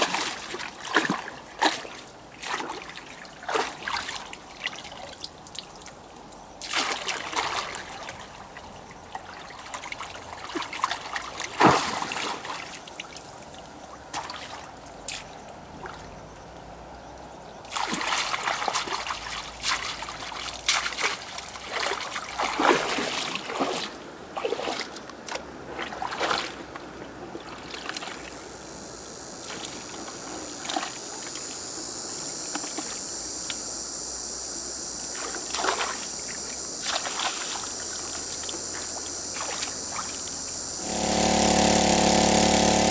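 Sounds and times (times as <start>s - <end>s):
water splashing and trickling: 17.7s - 28.3s
high-pitched hiss: 28.4s - 42.9s.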